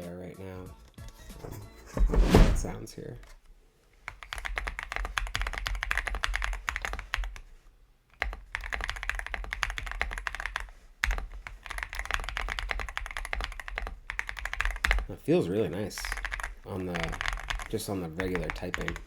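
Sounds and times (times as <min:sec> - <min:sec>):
mechanical keyboard typing: 0:04.1 - 0:07.5, 0:08.1 - 0:15.1, 0:15.7 - 0:19.0.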